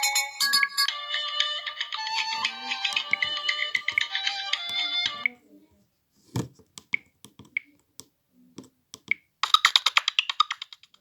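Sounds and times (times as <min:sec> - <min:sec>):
phone ringtone: 0:00.0 - 0:05.3
phone clicks and taps: 0:00.9 - 0:05.4, 0:06.3 - 0:10.9.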